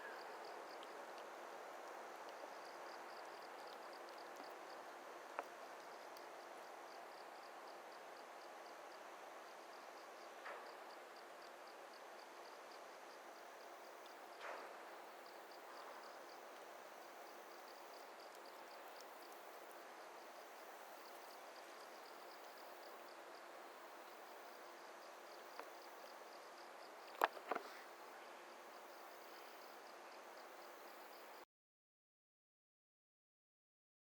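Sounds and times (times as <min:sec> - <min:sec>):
insect chirping: 0:00.0 - 0:31.4
low hiss: 0:00.0 - 0:31.4.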